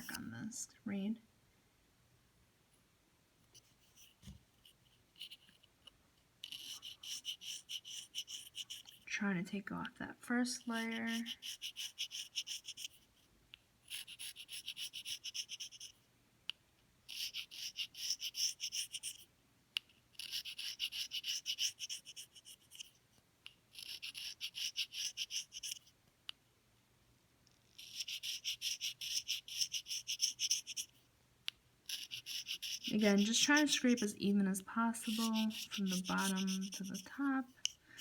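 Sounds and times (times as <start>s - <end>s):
knife scraping cane: 6.4s - 9.0s, 31.9s - 34.2s, 35.0s - 38.0s.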